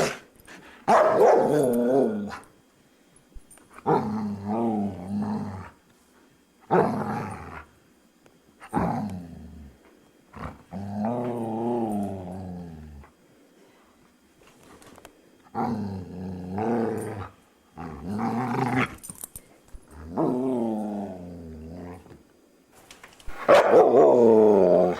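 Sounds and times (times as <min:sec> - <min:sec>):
dog howling: 0:23.5 - 0:24.9.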